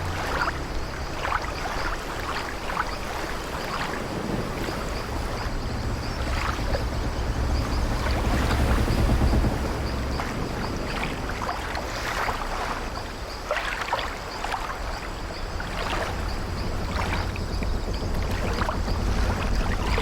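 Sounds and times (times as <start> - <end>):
waves washing against ship: 0.0 - 20.0
ship timbers creaking: 15.4 - 20.0.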